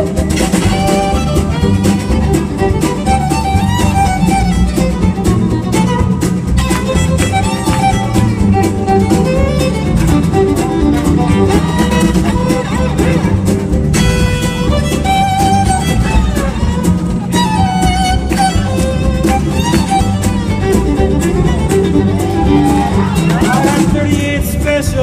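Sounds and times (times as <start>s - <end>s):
fiddle melody: 0.0s - 25.0s
string band rhythm accompaniment: 0.0s - 25.0s.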